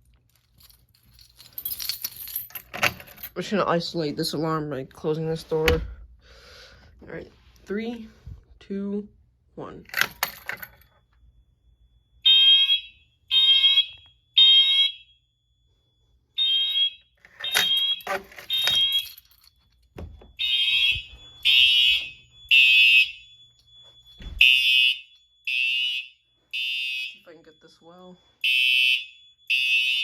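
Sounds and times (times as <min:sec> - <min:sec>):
fire alarm horn blasts: 0:11.4 - 0:19.3, 0:20.3 - 0:30.0.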